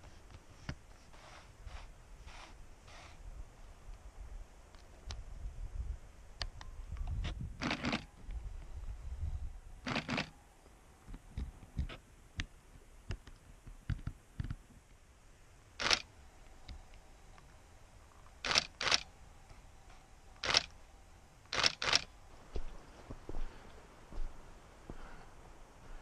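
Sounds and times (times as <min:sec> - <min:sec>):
camera shutter clicks: 0:07.6 - 0:08.0, 0:09.9 - 0:10.3, 0:15.8 - 0:16.1, 0:18.4 - 0:19.1, 0:20.4 - 0:20.7, 0:21.5 - 0:22.1.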